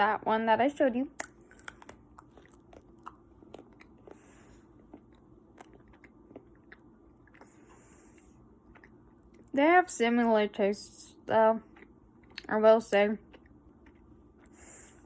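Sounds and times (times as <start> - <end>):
chocolate crunching: 1.2 - 4.2.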